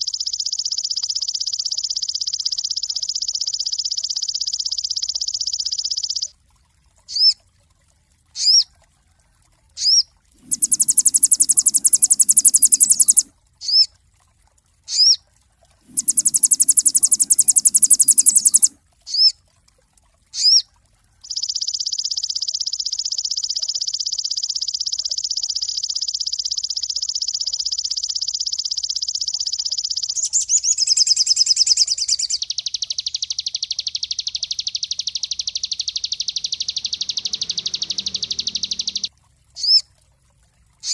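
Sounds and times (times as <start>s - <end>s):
bird trilling: 9.8s - 13.9s, 15.9s - 19.3s, 30.0s - 33.4s, 34.9s - 39.8s
bird chipping: 10.4s - 13.8s, 15.9s - 19.3s, 30.0s - 33.0s, 35.0s - 39.8s.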